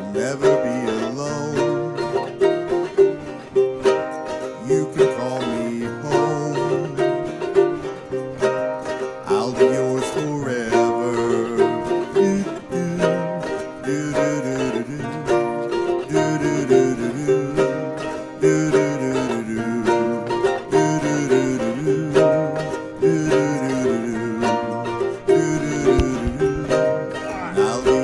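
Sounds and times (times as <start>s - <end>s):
song with strummed strings: 0.0s - 28.0s.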